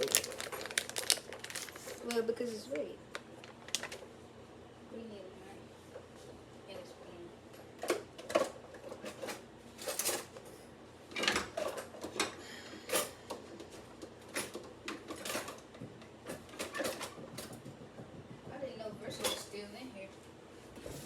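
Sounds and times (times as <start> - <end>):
drawer knocking: 17.0 - 19.4.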